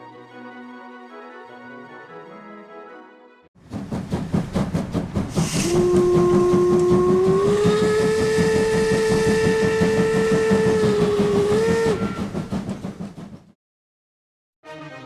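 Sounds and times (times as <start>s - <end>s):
rapid exhaust chuffing: 3.6s - 13.6s
steam locomotive whistle: 5.4s - 12.7s.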